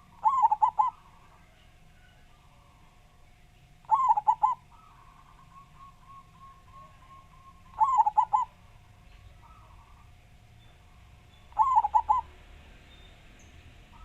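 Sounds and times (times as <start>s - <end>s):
dove cooing: 0.0s - 2.8s, 3.8s - 8.7s, 11.5s - 12.4s
faint steady hum: 0.0s - 14.0s.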